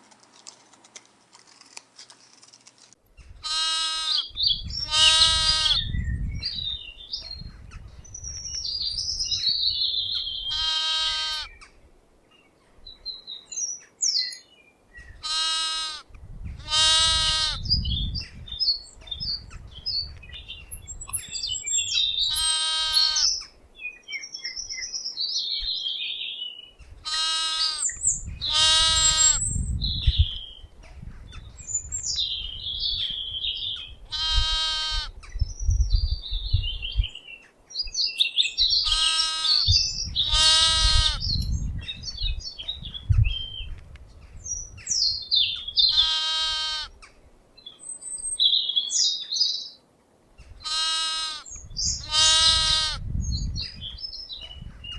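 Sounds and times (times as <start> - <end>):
birds chirping: 3.1 - 49.8, 50.4 - 54.9
goat bleating: 3.4 - 4.2, 4.8 - 5.8, 10.5 - 11.5, 15.2 - 17.6, 22.3 - 23.3, 27.0 - 27.9, 28.5 - 29.4, 34.1 - 35.1, 38.8 - 39.6, 40.2 - 41.2, 45.9 - 47.0, 50.6 - 53.0.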